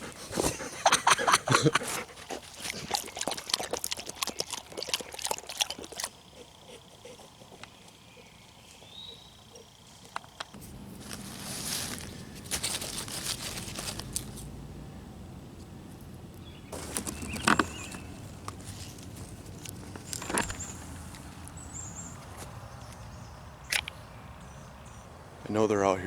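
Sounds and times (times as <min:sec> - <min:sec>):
twigs snapping: 0:10.2 - 0:14.5, 0:16.7 - 0:21.6
footsteps in dry leaves: 0:10.6 - 0:14.5, 0:16.7 - 0:21.6.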